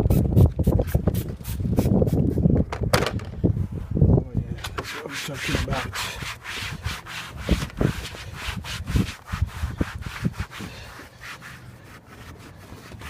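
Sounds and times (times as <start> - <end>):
cloth rubbing on surfaces: 4.8 - 13.0.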